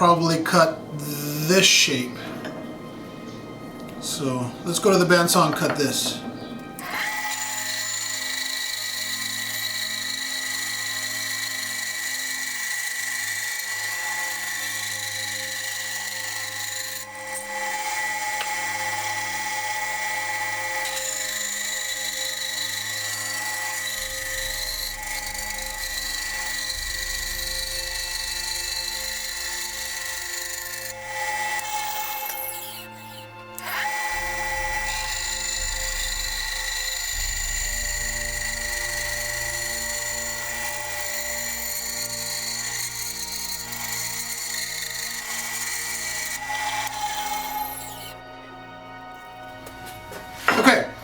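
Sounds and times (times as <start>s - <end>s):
bandsaw cutting wood: 0.0s - 2.6s, 3.9s - 51.0s.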